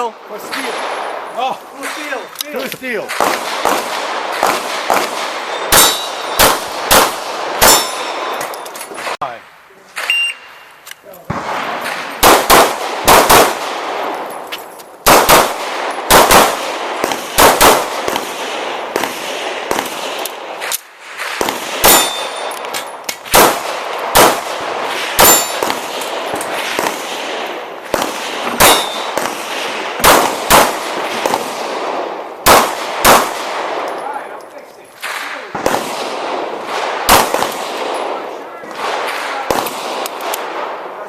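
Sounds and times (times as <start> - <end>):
pistol shots echoing: 0.0 - 9.2, 11.3 - 34.4, 35.0 - 41.0
metallic ding of steel targets: 5.8 - 6.4, 7.6 - 8.8, 21.9 - 22.6, 25.2 - 25.6.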